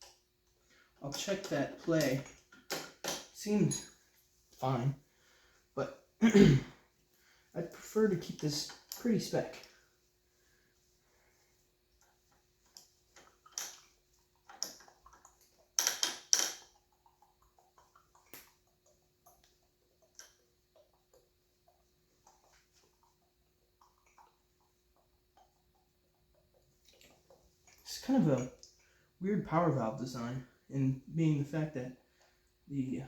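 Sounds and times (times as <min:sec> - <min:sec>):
metal parts clicking and clinking: 0:01.0 - 0:04.0, 0:15.8 - 0:16.7.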